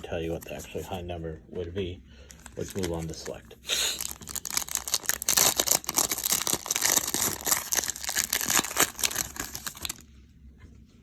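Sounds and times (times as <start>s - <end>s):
card pack wrapper tearing: 2.3s - 3.4s, 4.0s - 10.0s.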